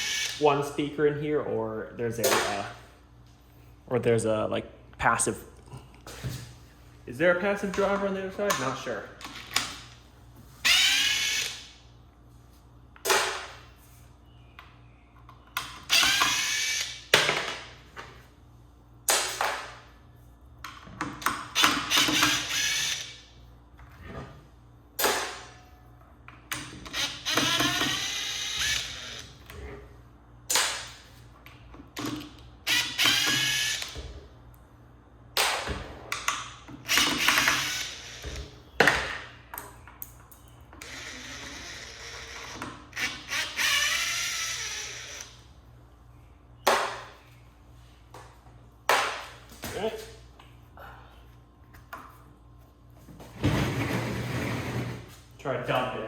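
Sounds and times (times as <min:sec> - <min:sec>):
impact driver whining: 0:00.0 - 0:00.5, 0:10.6 - 0:11.8, 0:15.6 - 0:17.3, 0:21.2 - 0:23.2, 0:26.5 - 0:29.6, 0:32.6 - 0:34.2, 0:36.8 - 0:39.1, 0:40.8 - 0:45.4.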